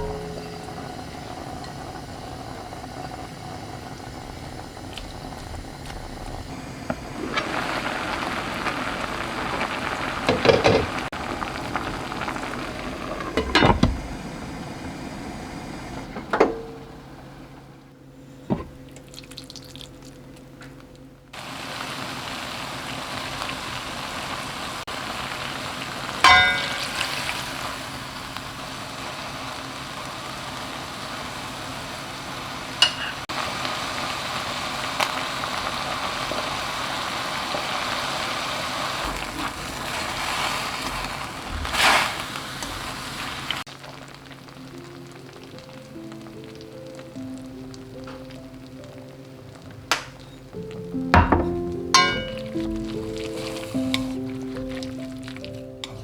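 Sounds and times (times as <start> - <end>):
utensil clanking on pan: 0.0 - 2.1, 10.3 - 11.0, 13.1 - 14.1, 26.2 - 27.3, 32.8 - 33.2, 51.2 - 54.8
food sizzling in a pan: 0.0 - 17.6, 21.4 - 56.0.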